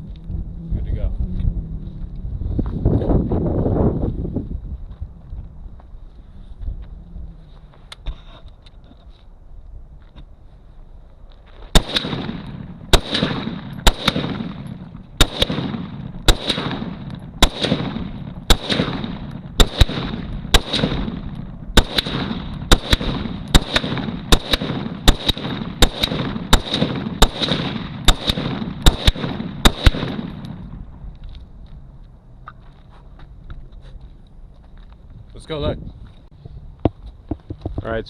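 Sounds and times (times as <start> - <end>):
rifle shots with echo: 11.7 - 30.8.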